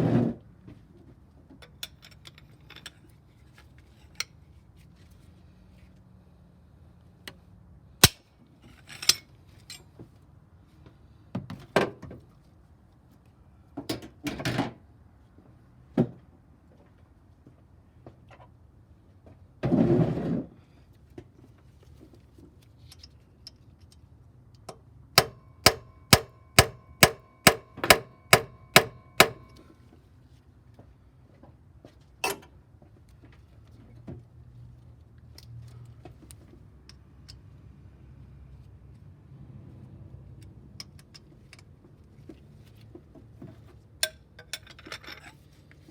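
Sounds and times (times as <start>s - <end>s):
hammer striking metal: 25.2s - 29.6s.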